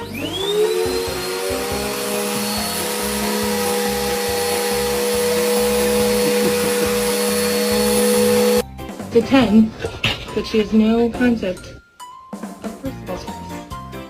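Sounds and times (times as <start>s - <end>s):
electric motor whining: 0.0s - 8.6s.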